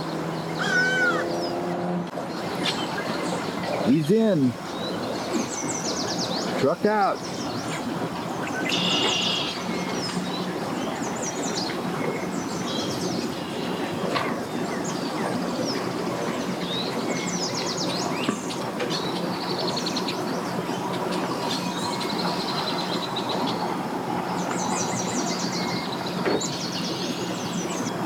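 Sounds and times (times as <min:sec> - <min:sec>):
birds chirping: 0:00.0 - 0:28.0
engine-like rumble: 0:00.0 - 0:28.0.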